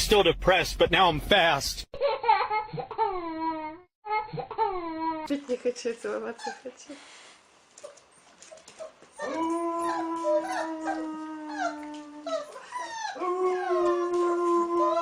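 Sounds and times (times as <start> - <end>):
dog howling: 9.2 - 15.0.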